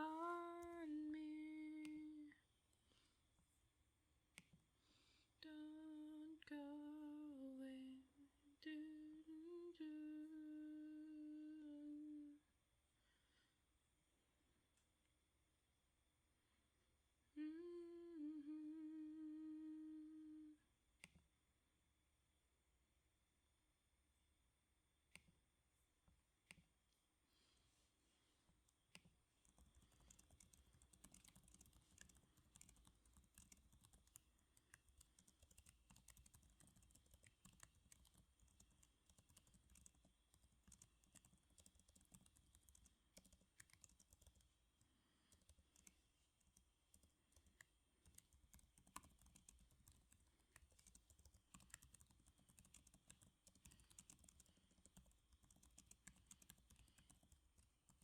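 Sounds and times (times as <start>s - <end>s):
typing on computer keyboard: 28.9s - 44.6s, 45.3s - 58.0s.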